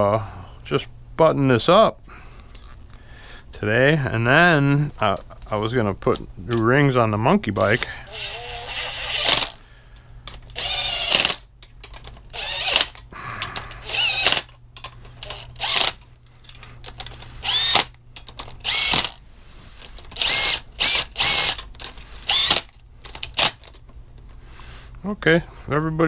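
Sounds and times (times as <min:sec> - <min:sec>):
power driver running bolts: 0:07.6 - 0:09.6, 0:10.3 - 0:19.2, 0:19.9 - 0:23.8.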